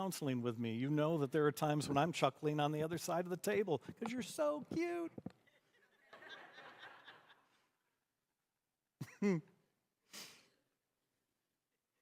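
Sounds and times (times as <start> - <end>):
man's short vocal sound: 9.0 - 9.6.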